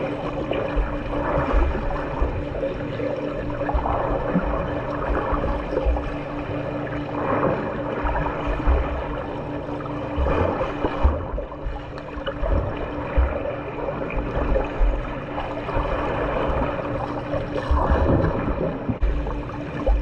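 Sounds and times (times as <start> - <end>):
faint steady hum: 0.0 - 20.0
low thuds: 10.2 - 13.5.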